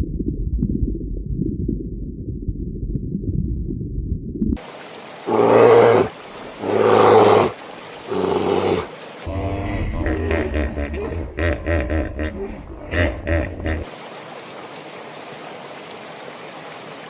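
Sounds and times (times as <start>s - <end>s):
large animal calling: 8.1s - 13.9s
low rumbling noise: 9.3s - 13.8s.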